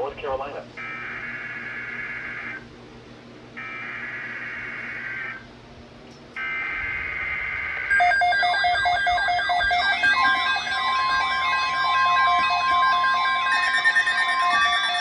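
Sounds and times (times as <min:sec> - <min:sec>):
buzzy digital data tones: 0:06.4 - 0:15.0
warbling electronic alert tone: 0:07.9 - 0:15.0.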